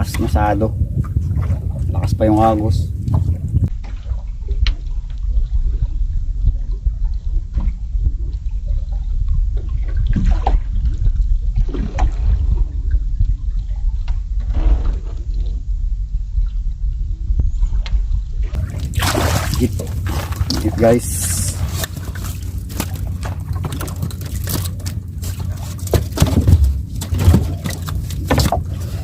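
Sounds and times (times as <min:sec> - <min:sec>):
water sloshing around boat: 0:00.0 - 0:15.8, 0:17.5 - 0:29.0
steady low rumble: 0:00.0 - 0:29.0
splashes: 0:18.5 - 0:29.0.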